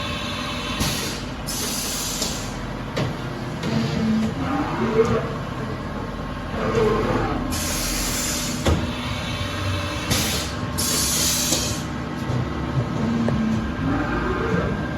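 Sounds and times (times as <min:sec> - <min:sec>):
compressed air blasts hissing: 0:10.1 - 0:11.9.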